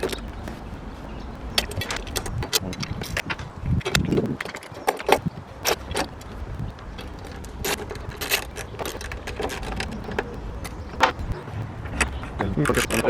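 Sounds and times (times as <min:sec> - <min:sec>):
low background rumble: 0:05.1 - 0:13.0
metal objects clinking: 0:06.9 - 0:13.0.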